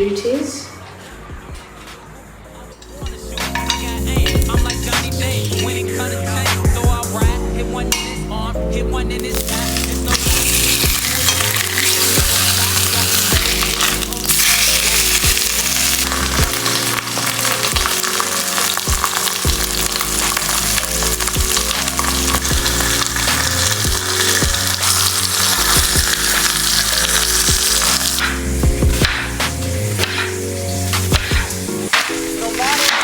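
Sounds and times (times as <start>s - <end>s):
rap music: 1.1s - 33.0s
fat sizzling in a pot: 2.8s - 5.8s, 9.2s - 33.0s.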